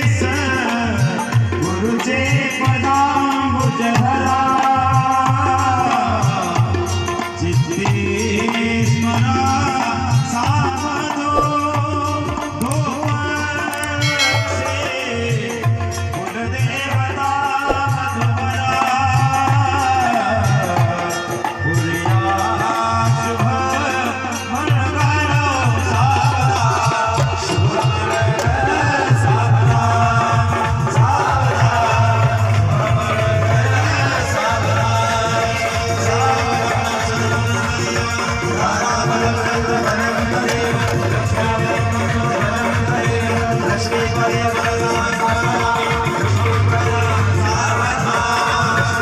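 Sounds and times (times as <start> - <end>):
tabla and dholak drumming: 0.0 - 49.0
wavering melody line: 13.8 - 15.8.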